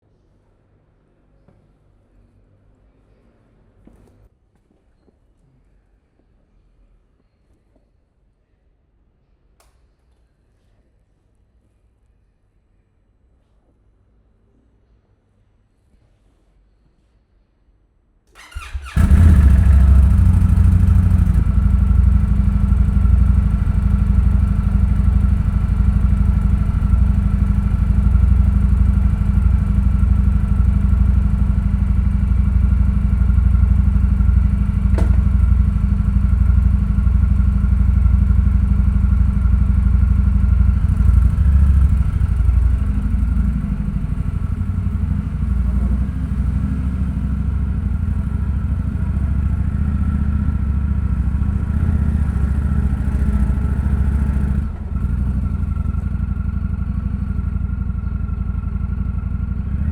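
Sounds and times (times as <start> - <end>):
faint click: 9.6 - 10.3
motorcycle engine starting and idling: 18.3 - 59.9.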